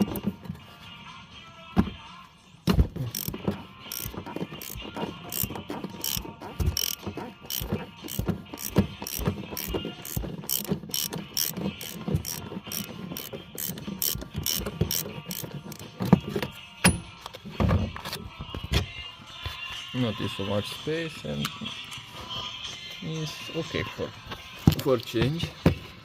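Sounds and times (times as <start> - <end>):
ratchet wrench clicking: 3.0 - 15.9.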